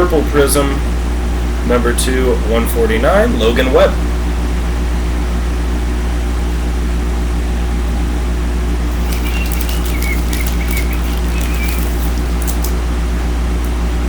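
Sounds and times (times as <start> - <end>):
low mechanical hum: 0.0 - 14.0
cards and wrappers crinkling: 8.9 - 12.8.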